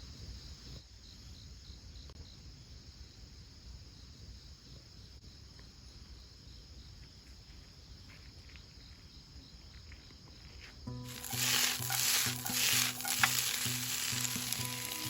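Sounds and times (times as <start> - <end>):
insects trilling: 8.2 - 15.0
insect pulsing chirp: 10.9 - 15.0.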